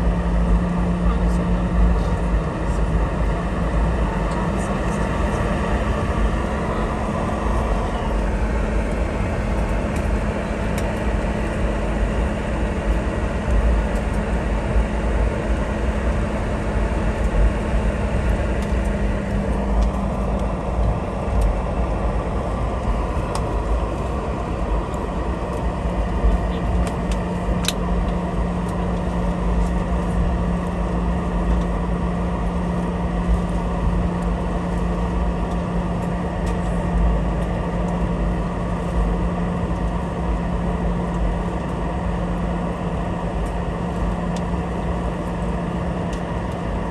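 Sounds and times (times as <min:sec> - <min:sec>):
jet engines humming at idle: 0:00.0 - 0:46.9
low rumble of aircraft rolling: 0:00.0 - 0:46.9.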